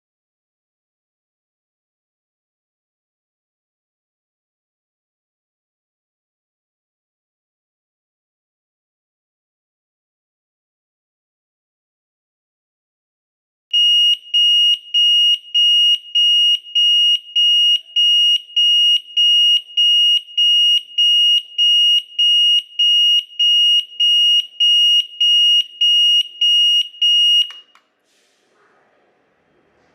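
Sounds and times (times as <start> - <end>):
smoke alarm beeping: 13.7 - 27.8.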